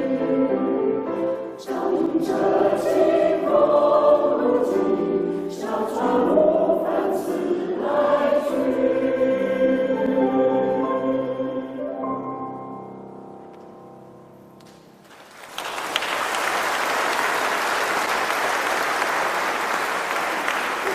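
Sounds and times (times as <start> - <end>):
choir singing held chords: 0.0 - 12.3.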